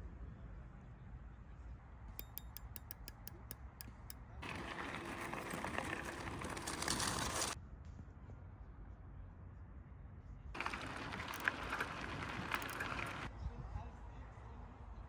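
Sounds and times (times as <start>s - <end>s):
bicycle freewheel ratcheting: 2.2s - 7.6s, 10.6s - 13.3s.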